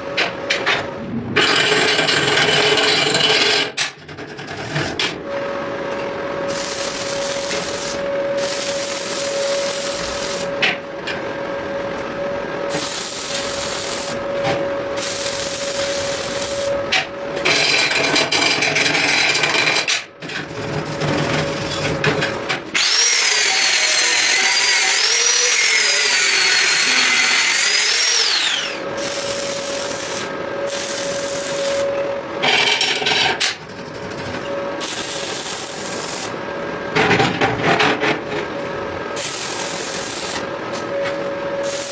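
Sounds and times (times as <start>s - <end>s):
steady machine hum: 0.0s - 19.0s, 26.4s - 41.9s
high whine of metal grinding: 4.6s - 18.0s, 22.8s - 33.1s, 38.6s - 41.9s.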